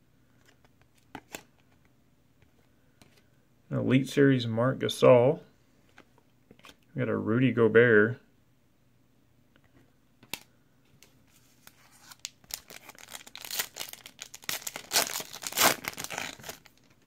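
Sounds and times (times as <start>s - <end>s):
foil wrapper tearing and crinkling: 12.0s - 17.0s.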